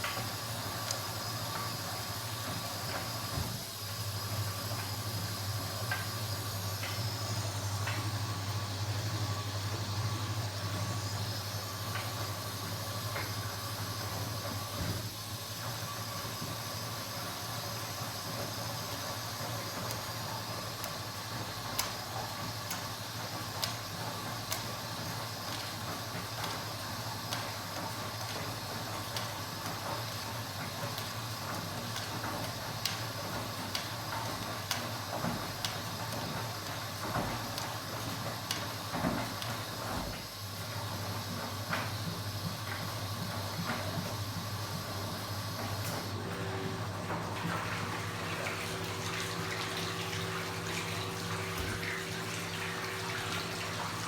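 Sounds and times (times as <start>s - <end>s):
washing machine motor hum: 0.0s - 54.0s.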